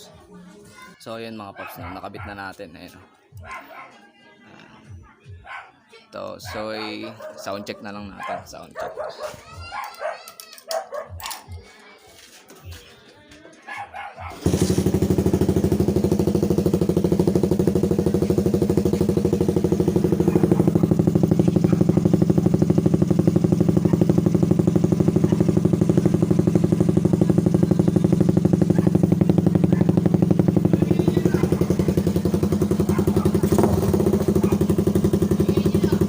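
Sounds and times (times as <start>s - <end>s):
motorcycle engine idling: 14.3s - 36.0s.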